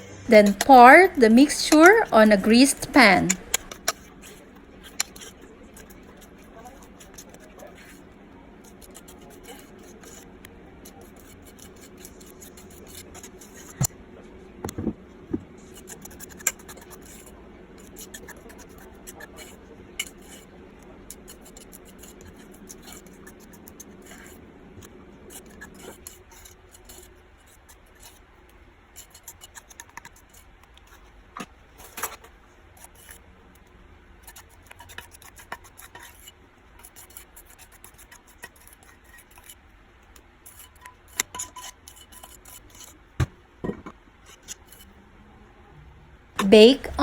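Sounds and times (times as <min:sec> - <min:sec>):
low steady hum: 0:00.0 - 0:29.3, 0:43.0 - 0:47.0
spatula scraping batter: 0:00.3 - 0:45.0.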